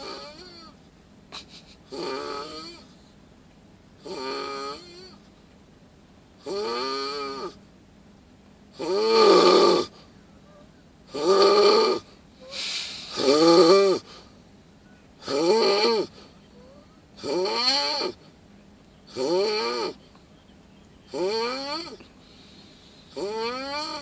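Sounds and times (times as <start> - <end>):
bear snoring: 0.0 - 0.8, 1.9 - 2.9, 4.0 - 5.2, 6.4 - 7.6, 8.8 - 10.0, 11.1 - 14.2, 15.2 - 16.3, 17.2 - 18.2, 19.1 - 20.0, 21.1 - 22.1, 23.1 - 24.0.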